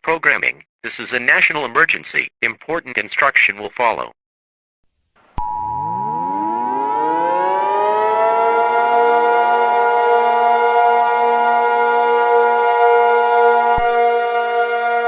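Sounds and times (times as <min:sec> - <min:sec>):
two-tone alert signal: 0:05.4 - 0:07.4
civil defense siren winding up: 0:05.4 - 0:15.0.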